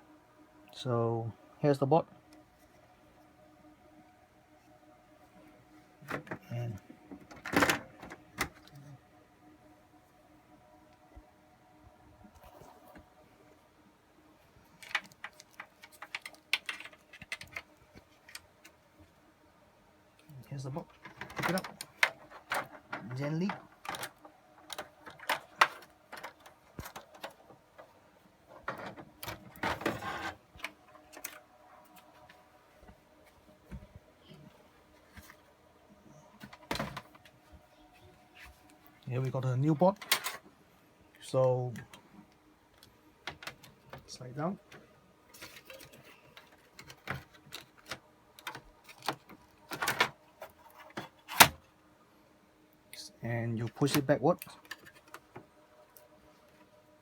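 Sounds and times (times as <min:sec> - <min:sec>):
motherboard sliding into chassis: 0:28.8 - 0:30.4.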